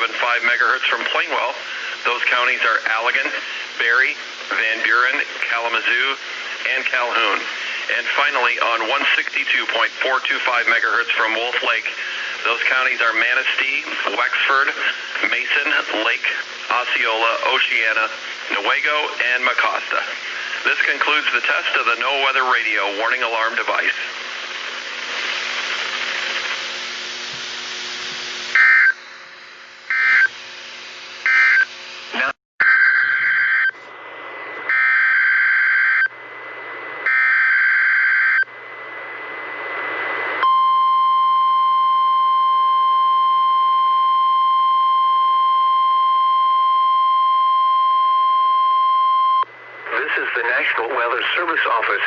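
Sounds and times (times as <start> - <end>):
radio static hiss: 0.0 - 32.4, 33.0 - 34.8, 36.0 - 37.1, 38.5 - 40.4, 49.4 - 52.0
steady alarm tone: 27.9 - 29.2, 29.8 - 30.4, 31.2 - 31.8, 34.7 - 36.2, 37.0 - 38.5
screeching digital data bursts: 29.9 - 30.3.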